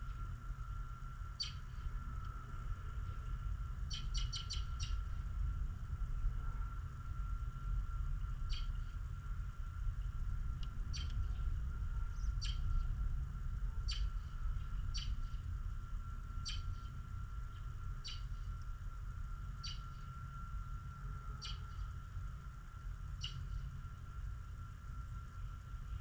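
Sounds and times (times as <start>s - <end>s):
faint steady whine: 0.0s - 26.0s
low steady rumble: 0.0s - 26.0s
bird chirping: 1.4s - 1.6s, 3.9s - 5.0s, 12.4s - 12.6s, 13.9s - 14.1s, 15.0s - 15.2s, 16.4s - 16.8s, 18.0s - 18.3s, 19.6s - 20.0s, 21.4s - 21.8s.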